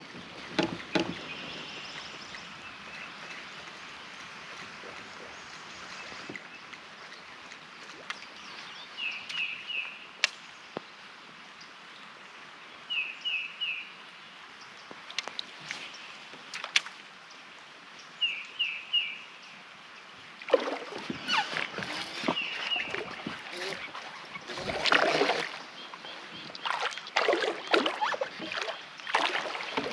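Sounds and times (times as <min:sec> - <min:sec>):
steady outdoor hiss: 0:00.0 - 0:29.9
bird singing: 0:21.2 - 0:29.9.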